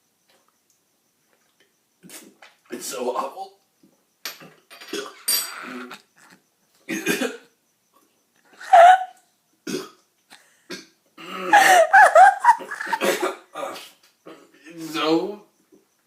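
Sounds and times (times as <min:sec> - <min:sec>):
person coughing: 0:06.9 - 0:07.4.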